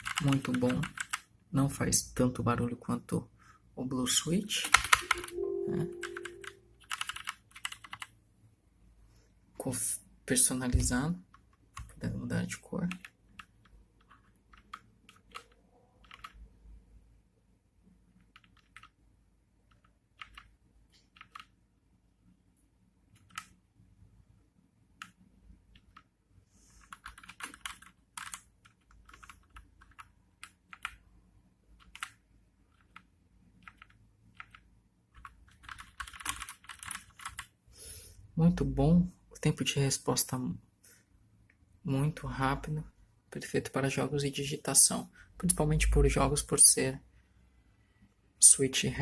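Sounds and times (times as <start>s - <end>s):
mechanical keyboard typing: 0.0s - 1.3s, 4.6s - 8.1s, 12.8s - 16.5s, 18.2s - 19.0s, 19.6s - 21.6s, 23.2s - 23.5s, 26.8s - 31.0s, 31.8s - 37.5s.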